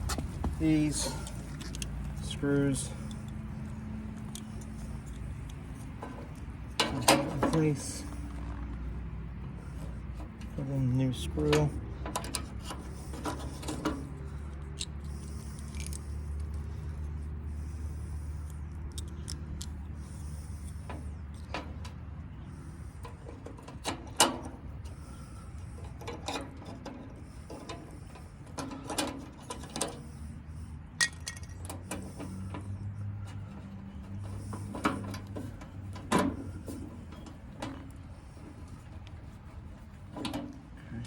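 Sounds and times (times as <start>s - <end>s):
metallic clicks and knocks: 0.0s - 8.4s, 25.6s - 30.1s, 31.0s - 40.8s.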